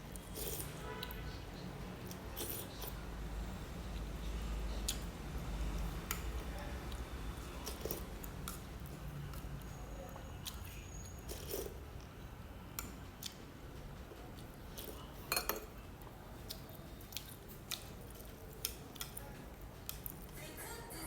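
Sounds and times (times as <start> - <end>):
person chewing food: 0.1 - 1.2, 1.9 - 3.0, 5.7 - 9.7, 10.4 - 12.1, 12.8 - 13.5, 14.1 - 20.4.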